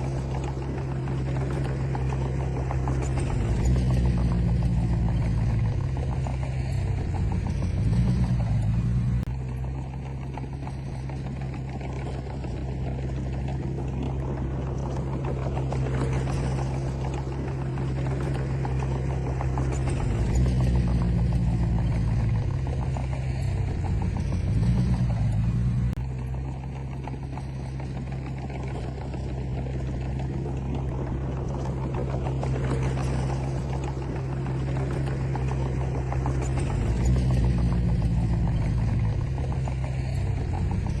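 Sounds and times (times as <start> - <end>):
diesel engine running under load: 0.0 - 41.0.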